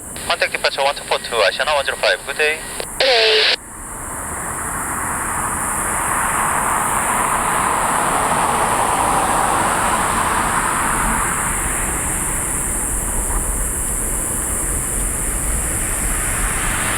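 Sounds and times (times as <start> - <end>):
jet engines roaring: 0.0 - 3.6.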